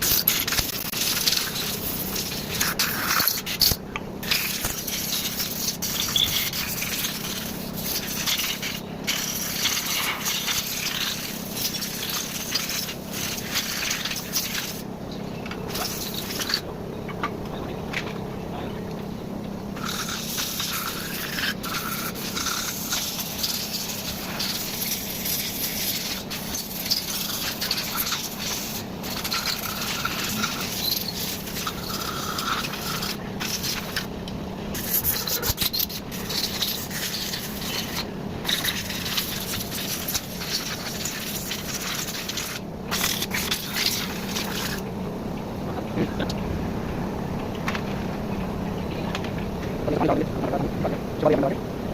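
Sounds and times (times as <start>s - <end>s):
air blow gun hissing: 0.0s - 14.9s, 19.8s - 34.1s, 34.7s - 44.8s.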